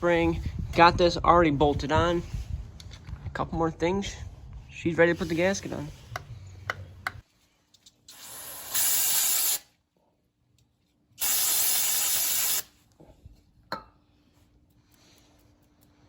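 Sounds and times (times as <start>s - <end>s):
aerosol can spraying: 8.1s - 9.7s, 11.2s - 12.7s.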